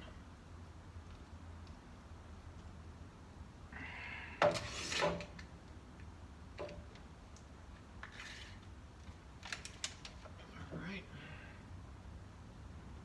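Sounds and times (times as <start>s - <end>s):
scrape: 4.5s - 5.3s, 8.1s - 8.6s.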